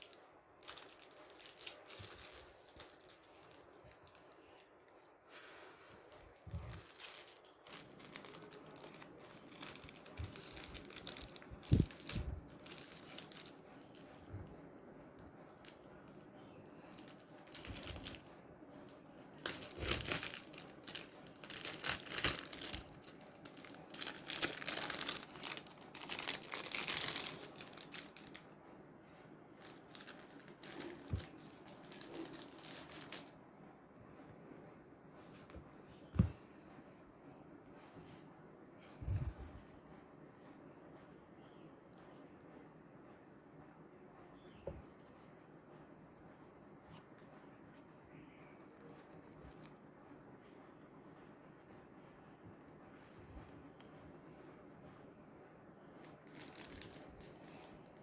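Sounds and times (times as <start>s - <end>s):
packaging crinkling and tearing: 0.0s - 4.9s, 6.4s - 14.5s, 15.2s - 28.6s, 29.6s - 33.4s, 48.7s - 49.8s, 56.0s - 58.0s.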